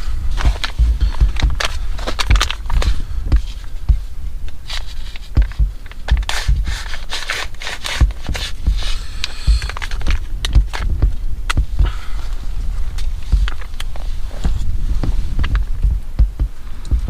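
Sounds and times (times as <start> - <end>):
low handling thumps: 0.0 - 7.1, 7.8 - 17.0
scraping: 0.0 - 17.0
foil pouch tearing and crinkling: 4.6 - 8.3.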